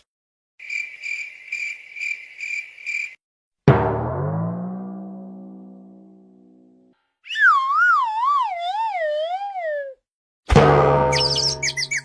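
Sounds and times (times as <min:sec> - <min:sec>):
high-pitched tweeting chirps: 0:07.3 - 0:10.0, 0:11.1 - 0:12.0.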